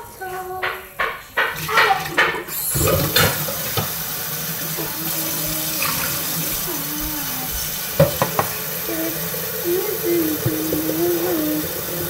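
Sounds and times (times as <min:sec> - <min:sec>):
running water: 0:01.0 - 0:12.0
faint voice: 0:04.6 - 0:07.7, 0:08.8 - 0:12.0.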